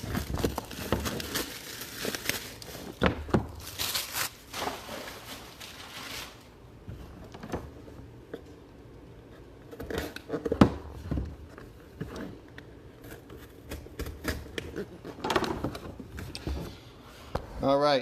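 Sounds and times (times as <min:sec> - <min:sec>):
packaging rustling: 0:00.0 - 0:06.6.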